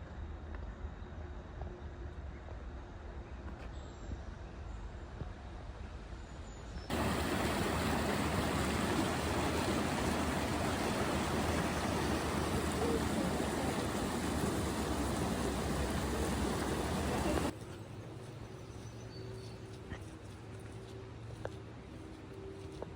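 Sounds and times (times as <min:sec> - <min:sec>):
stream water rushing: 0:06.9 - 0:17.5.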